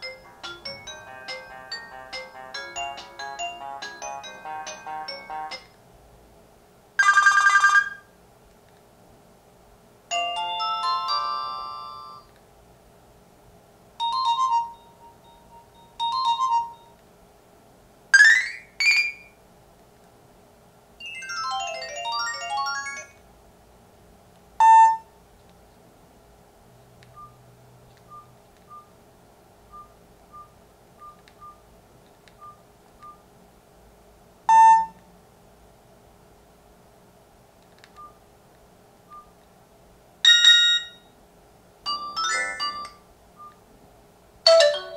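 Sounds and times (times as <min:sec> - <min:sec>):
phone ringtone melody: 0:00.0 - 0:05.7, 0:07.0 - 0:08.0, 0:10.1 - 0:12.2, 0:14.0 - 0:16.9, 0:21.0 - 0:23.2, 0:40.3 - 0:41.0, 0:41.9 - 0:43.0, 0:44.5 - 0:44.9.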